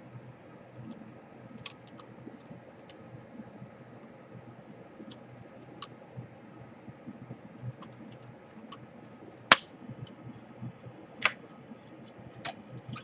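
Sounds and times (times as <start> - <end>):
sharp plastic snap: 9.4 - 9.7, 11.2 - 11.4.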